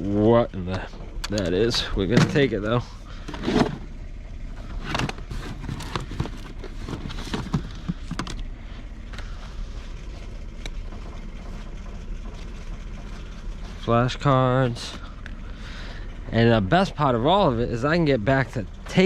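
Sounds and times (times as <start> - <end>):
low vehicle hum: 0.0 - 19.0
junk being picked up and loaded: 1.4 - 3.9, 4.6 - 8.5.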